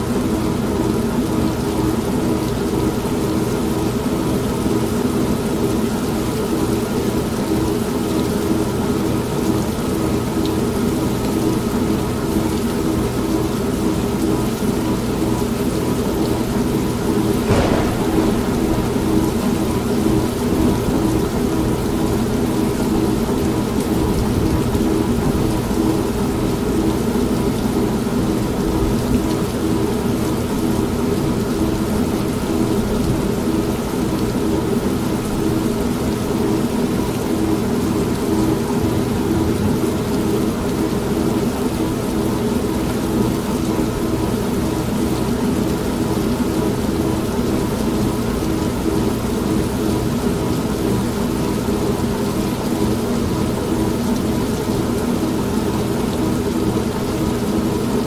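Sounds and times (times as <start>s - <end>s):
steady rain: 0.0s - 58.0s
thunder crack: 17.3s - 23.2s.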